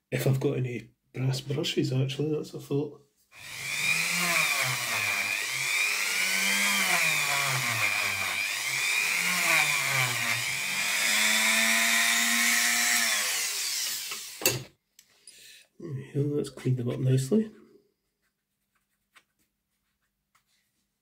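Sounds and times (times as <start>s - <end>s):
rotary tool whining: 3.4s - 14.7s.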